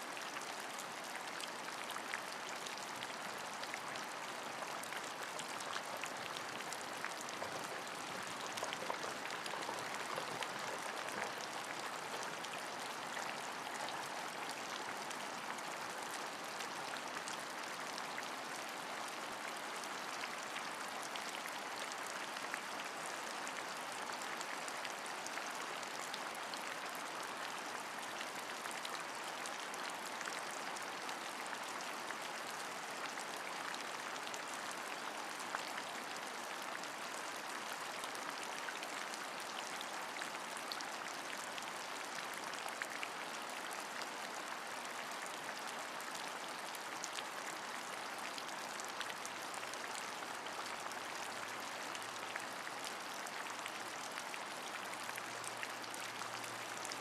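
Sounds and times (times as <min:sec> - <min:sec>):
steady rain: 0:00.0 - 0:57.0.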